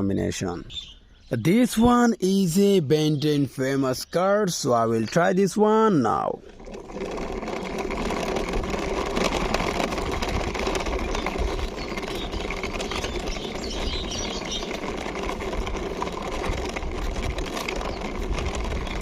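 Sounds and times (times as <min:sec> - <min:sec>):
toy car wheels rattling: 0:05.6 - 0:19.0.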